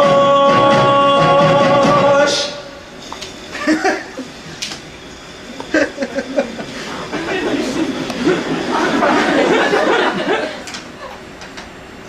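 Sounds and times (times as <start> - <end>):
man singing long note: 0.0 - 2.9
man chuckling: 3.5 - 4.4, 5.5 - 11.2.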